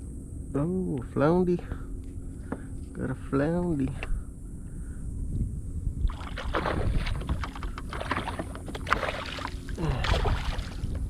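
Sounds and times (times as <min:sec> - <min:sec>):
wind rumble on microphone: 0:00.0 - 0:11.0
water splashing against kayak: 0:06.1 - 0:11.0.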